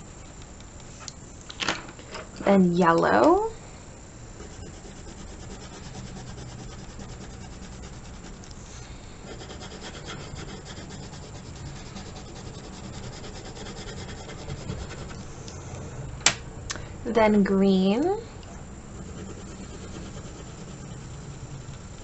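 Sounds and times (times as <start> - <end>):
colored pencil rubbing on paper: 4.4 - 15.3, 18.9 - 22.0.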